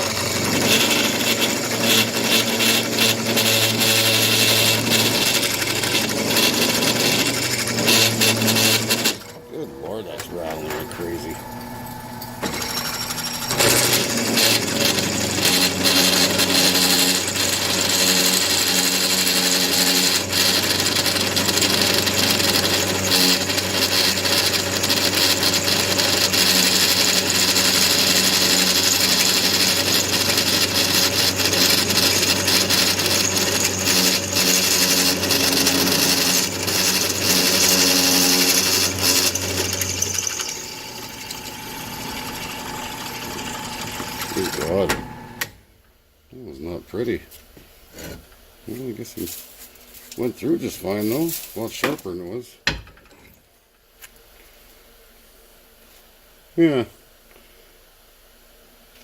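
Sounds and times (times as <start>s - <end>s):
drill bit cutting metal chatter: 0.0s - 11.8s, 12.5s - 45.2s
drill press motor hum: 0.0s - 45.6s.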